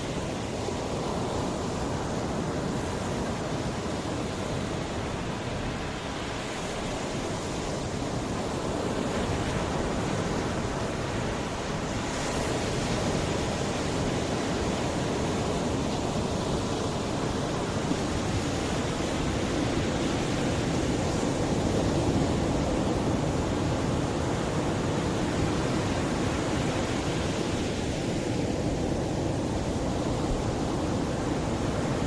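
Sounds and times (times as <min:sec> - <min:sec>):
sea waves washing onto shore: 0:00.0 - 0:32.0
wind on microphone: 0:00.0 - 0:32.0.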